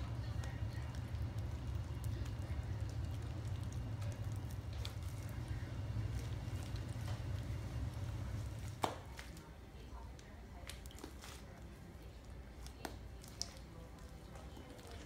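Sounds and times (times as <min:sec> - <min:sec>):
slime squishing by hand: 0:00.0 - 0:15.0.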